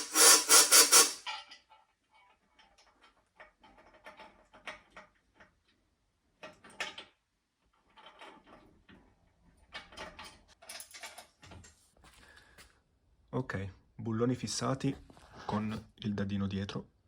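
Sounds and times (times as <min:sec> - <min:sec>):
hand tools clicking and scraping: 0:00.0 - 0:01.3.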